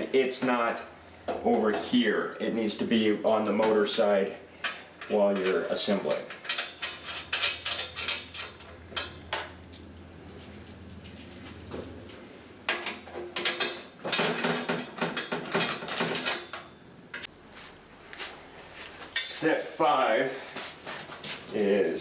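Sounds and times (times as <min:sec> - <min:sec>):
metal parts clinking and clanking: 0:04.6 - 0:17.3.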